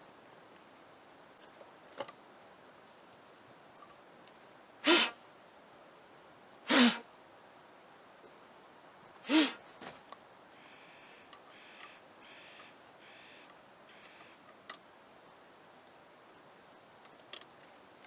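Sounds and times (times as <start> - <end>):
person sneezing: 4.8 - 5.2, 6.7 - 7.0, 9.3 - 9.6.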